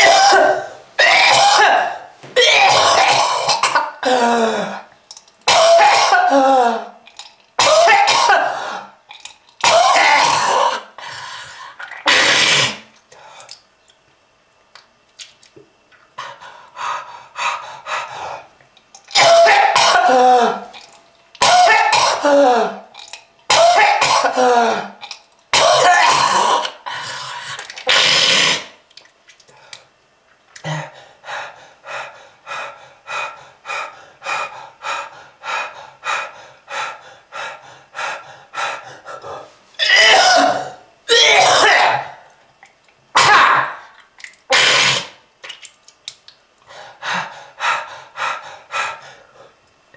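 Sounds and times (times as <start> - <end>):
person coughing: 0.0 - 4.8, 5.5 - 6.9, 7.6 - 8.8, 9.6 - 10.9, 19.2 - 20.7, 21.4 - 22.8, 23.5 - 25.0, 25.6 - 26.8, 39.8 - 42.2.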